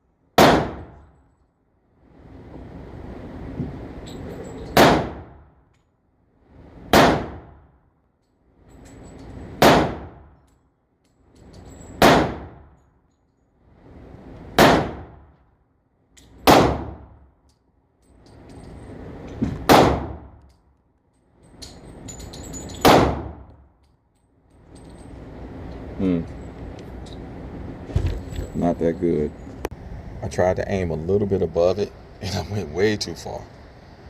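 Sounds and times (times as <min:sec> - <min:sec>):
handgun shots: 0:00.4 - 0:01.0, 0:04.7 - 0:05.3, 0:06.9 - 0:07.5, 0:09.6 - 0:10.2, 0:12.0 - 0:12.6, 0:14.6 - 0:15.1, 0:16.4 - 0:17.1, 0:19.6 - 0:20.3, 0:22.8 - 0:23.4.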